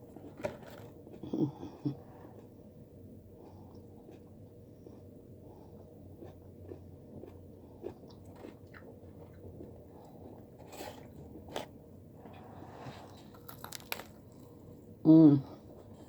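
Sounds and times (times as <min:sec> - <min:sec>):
chewing fried chicken: 0:03.4 - 0:14.7.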